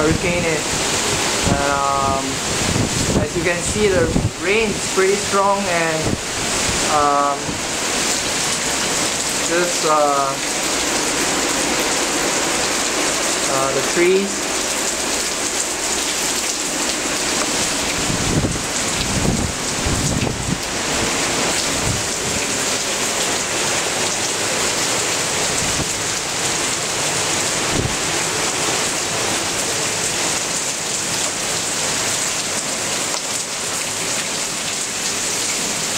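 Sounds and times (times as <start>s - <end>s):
heavy rain pouring: 0.0s - 35.9s
low rumbles: 5.9s - 29.6s.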